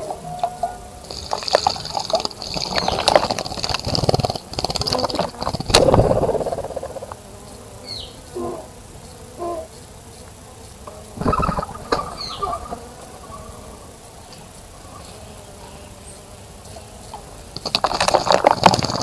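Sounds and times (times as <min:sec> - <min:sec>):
birds splashing and fluttering: 0:01.1 - 0:07.0, 0:11.2 - 0:13.6, 0:17.6 - 0:19.0
high bird chirp: 0:11.2 - 0:13.6.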